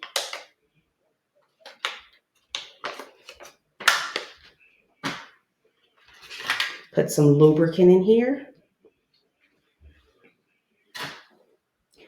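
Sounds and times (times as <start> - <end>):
plastic and paper packaging crinkling: 1.5 - 5.3, 5.9 - 7.0.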